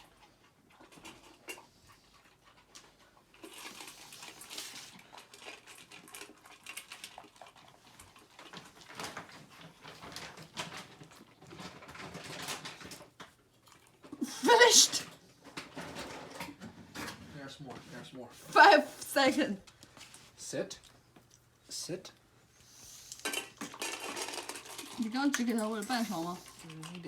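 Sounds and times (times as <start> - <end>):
puppy crunching dry kibble: 0.0 - 14.2, 22.6 - 27.0.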